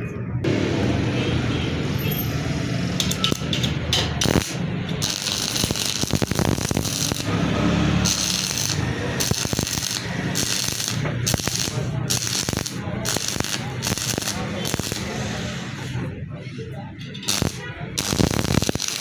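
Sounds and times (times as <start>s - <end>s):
welding arc crackling: 2.8s - 15.9s, 17.2s - 19.0s.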